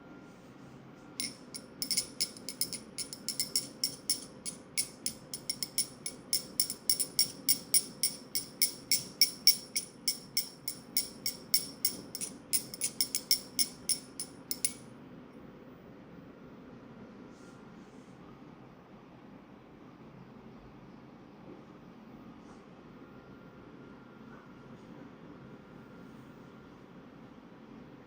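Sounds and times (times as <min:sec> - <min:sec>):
rapid metallic clicking: 0:01.2 - 0:14.8.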